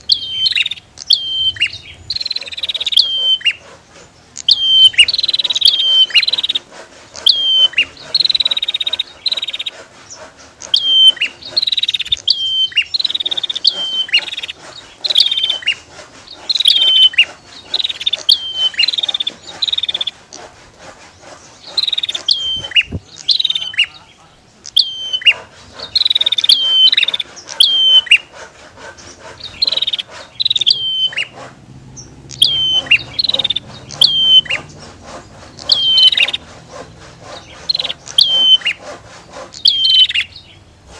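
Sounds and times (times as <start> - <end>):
birds whistling calls: 0.0 - 40.9.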